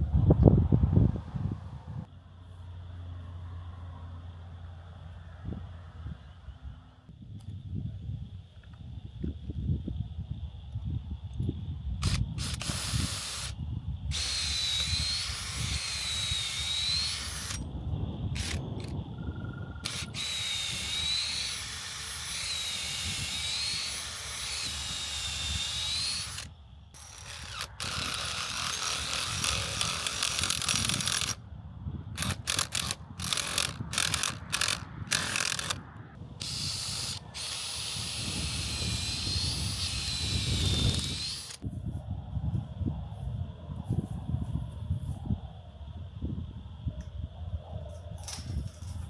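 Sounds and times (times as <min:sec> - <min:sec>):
power drill whining: 0:12.0 - 0:17.6, 0:18.4 - 0:18.9, 0:19.8 - 0:31.4, 0:32.2 - 0:35.8, 0:36.4 - 0:41.6.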